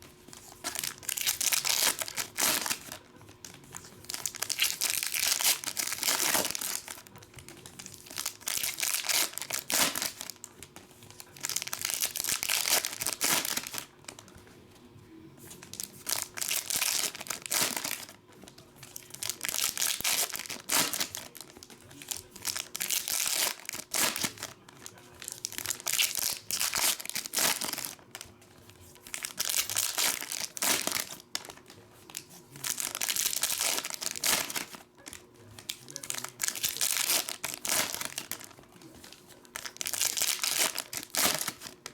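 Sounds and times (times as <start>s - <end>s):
card pack wrappers crinkling and tearing: 0.0s - 14.4s, 15.5s - 41.9s.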